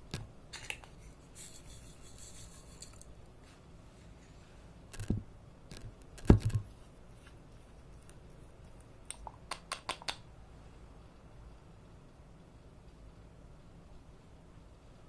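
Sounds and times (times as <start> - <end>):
dull knocks of objects: 5.0 - 6.7.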